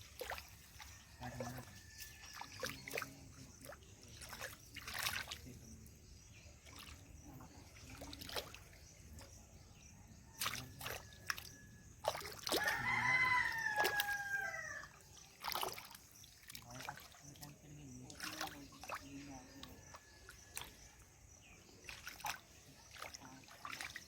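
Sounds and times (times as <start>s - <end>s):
water splashes: 0.0s - 9.6s, 10.2s - 24.0s
shallow water trickling: 0.0s - 24.0s.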